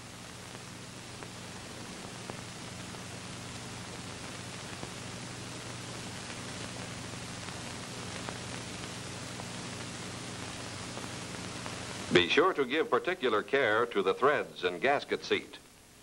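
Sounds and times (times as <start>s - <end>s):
soundtrack hiss: 0.0s - 16.0s
faint ticks: 0.4s - 1.4s.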